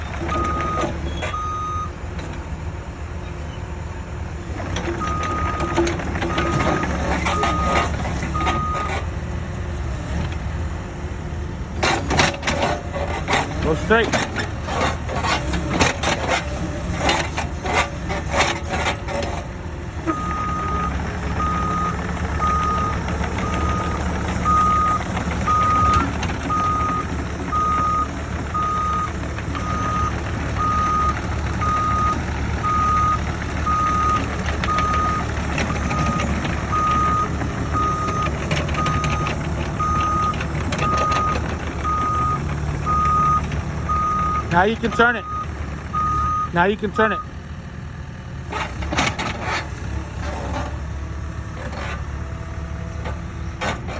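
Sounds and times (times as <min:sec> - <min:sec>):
diesel engine humming: 0:00.0 - 0:53.9
travel alarm beeping: 0:00.3 - 0:01.9, 0:05.0 - 0:08.9, 0:20.1 - 0:47.3.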